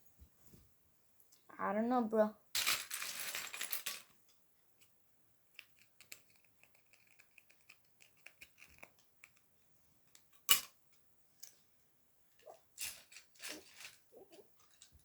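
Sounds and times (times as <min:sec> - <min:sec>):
plastic toy bricks clicking: 0:05.6 - 0:09.4.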